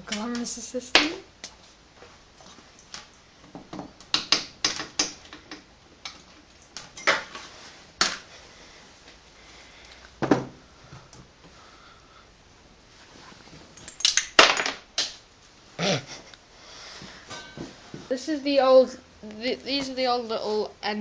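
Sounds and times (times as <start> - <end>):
hand tools and metal parts clicking: 13.8 - 14.4.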